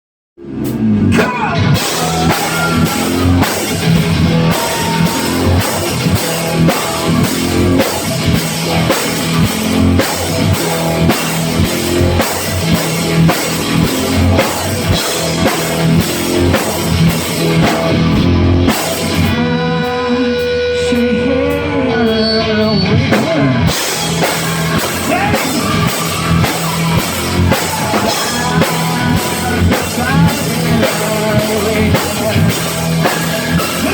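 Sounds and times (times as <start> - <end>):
drums: 0.4 - 33.9
electric guitar: 0.5 - 33.9
person singing: 1.2 - 8.2, 19.2 - 33.9.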